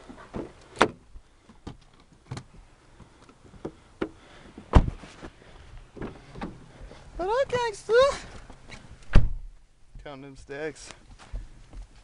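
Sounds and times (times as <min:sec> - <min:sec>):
heavy thump: 0:04.7 - 0:05.1, 0:09.1 - 0:09.5.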